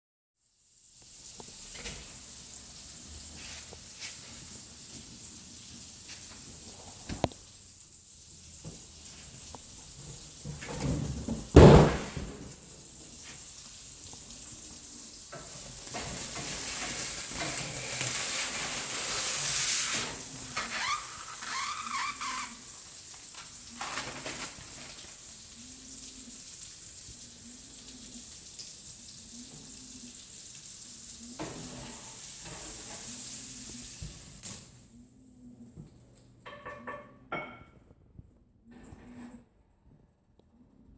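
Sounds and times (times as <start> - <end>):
food sizzling in a frying pan: 0.4 - 11.7, 12.5 - 37.0
loud thump: 11.6 - 12.5
plastic film crinkling: 23.3 - 25.2.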